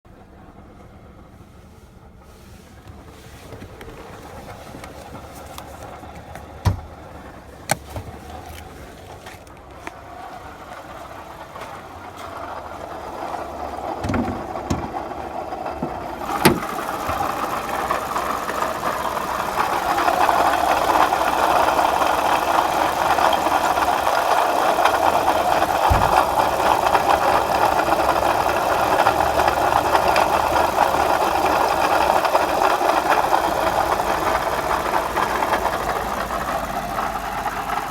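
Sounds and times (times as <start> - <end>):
car engine with water pump noise: 0.1 - 37.9
sharp clicks and knocks: 7.6 - 10.0, 14.0 - 15.0, 15.7 - 17.6, 23.0 - 27.1.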